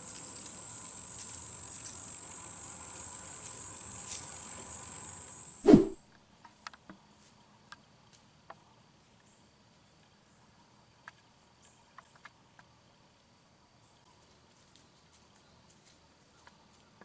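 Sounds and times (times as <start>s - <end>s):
high insect chirring: 0.0s - 5.7s.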